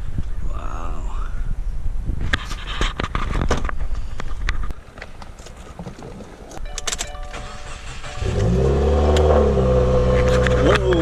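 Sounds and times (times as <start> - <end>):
car engine starting and idling: 5.2 - 11.0
clicks: 6.5 - 7.4
short electronic chime: 6.6 - 8.9.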